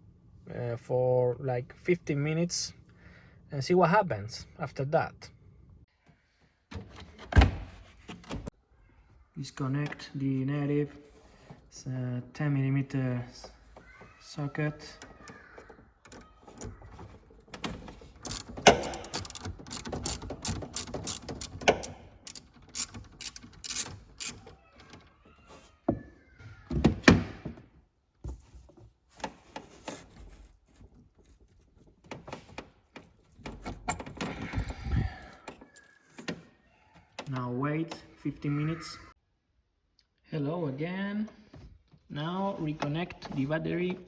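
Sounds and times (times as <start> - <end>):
tools being handled: 14.8 - 25.7
ratchet wrench clicking: 18.2 - 24.4.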